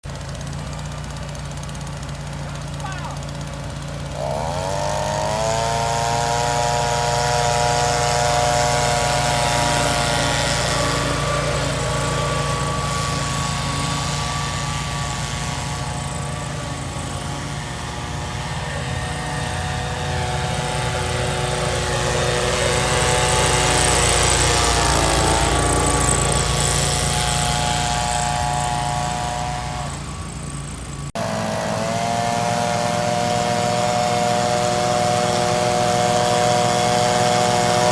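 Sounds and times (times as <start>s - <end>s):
lawn mower engine running: 0.0s - 37.9s.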